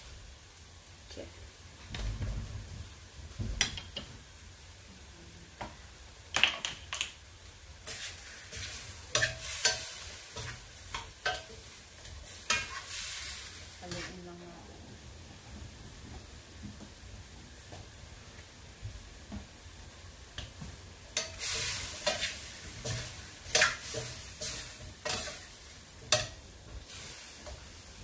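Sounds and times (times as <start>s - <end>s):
chicken sizzling in a pan: 2.9s - 28.0s
utensil knocking and scraping pan: 21.2s - 26.4s.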